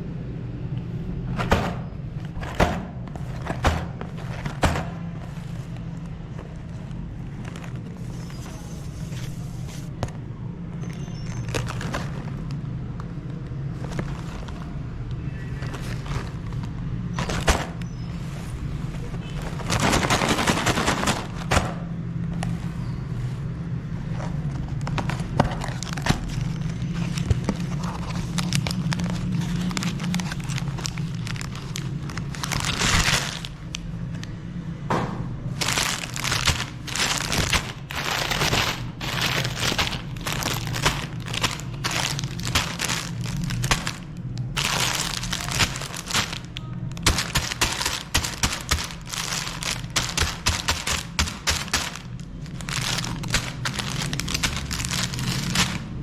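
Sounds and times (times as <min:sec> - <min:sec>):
chocolate cracking and crunching: 0:10.7 - 0:18.0, 0:24.6 - 0:34.3, 0:35.6 - 0:56.0.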